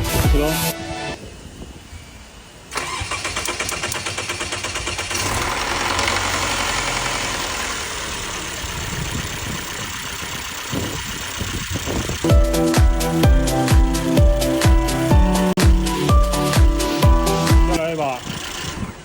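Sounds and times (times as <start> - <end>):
petrol engine cranking and starting: 2.2 - 19.0.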